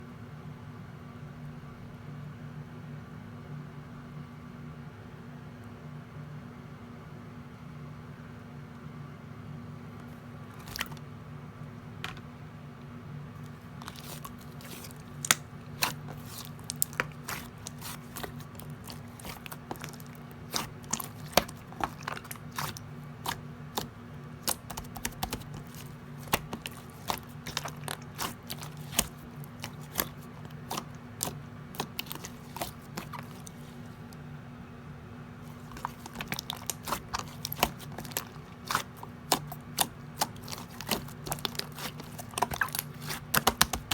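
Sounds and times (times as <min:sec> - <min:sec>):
steady low hum: 0:09.4 - 0:43.9
slime clicking and popping: 0:13.8 - 0:33.6, 0:35.6 - 0:43.9.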